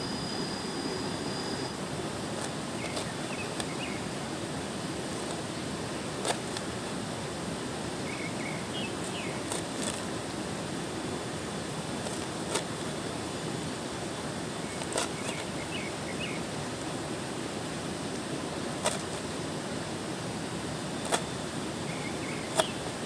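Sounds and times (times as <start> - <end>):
faint high chirps: 0.0 - 1.9, 21.7 - 22.9
outdoor background hiss: 0.0 - 23.0
sharp clicks: 21.0 - 21.3.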